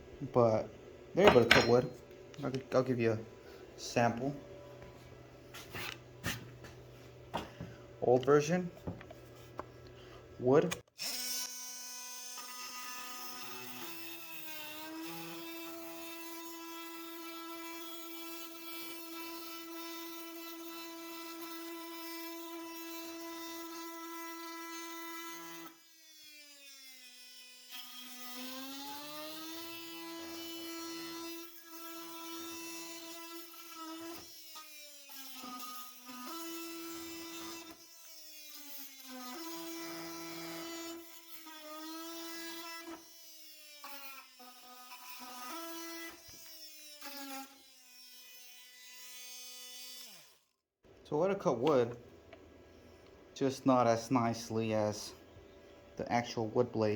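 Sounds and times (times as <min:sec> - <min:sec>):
oscillating multi-tool cutting wood: 0:10.7 - 0:50.5.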